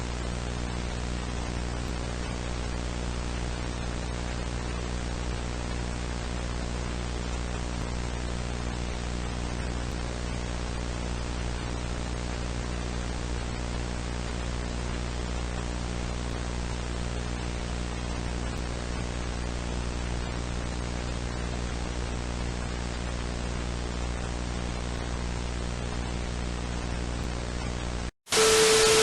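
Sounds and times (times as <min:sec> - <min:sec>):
low electrical buzzing hum: 0:00.0 - 0:29.0
static hiss: 0:00.0 - 0:29.0.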